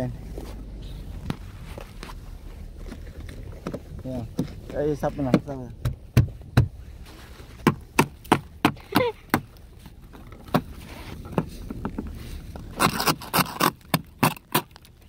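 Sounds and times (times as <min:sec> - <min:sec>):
ice crunching scrape: 0:10.7 - 0:14.9.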